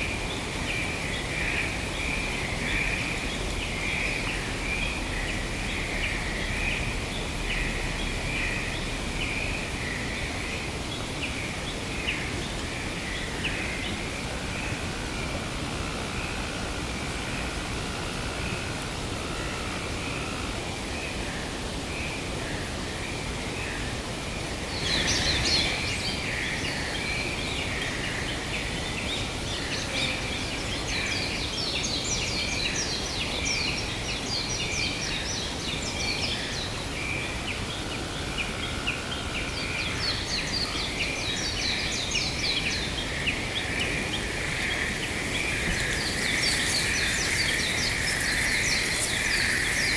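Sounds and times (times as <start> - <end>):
wind hiss: 0.0 - 49.9
birds chirping and trilling: 24.7 - 36.7, 38.4 - 49.9.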